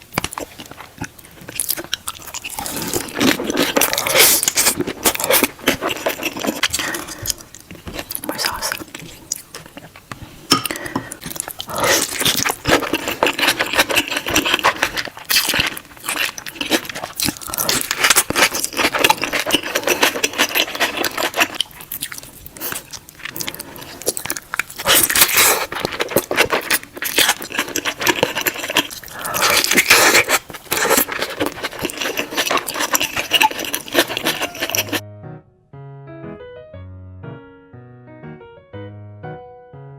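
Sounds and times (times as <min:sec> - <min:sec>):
wet crunchy chewing: 0:00.0 - 0:35.0
piano music: 0:34.0 - 0:39.9.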